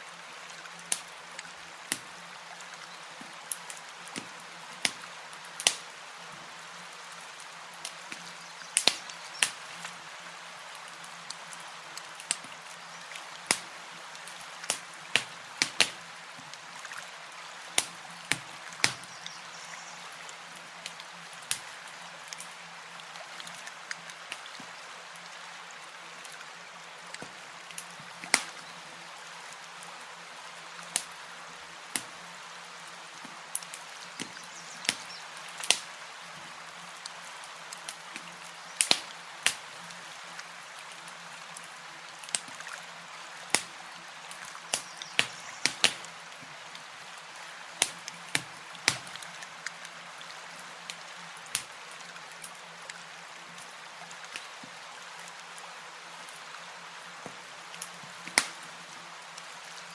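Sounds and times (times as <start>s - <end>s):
campfire crackling: 0.1s - 55.4s, 57.2s - 59.9s.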